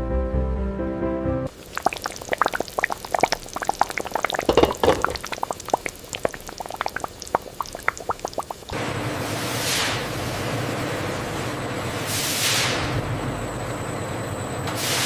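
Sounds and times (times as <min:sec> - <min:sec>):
thick liquid bubbling and popping: 0:01.5 - 0:08.8.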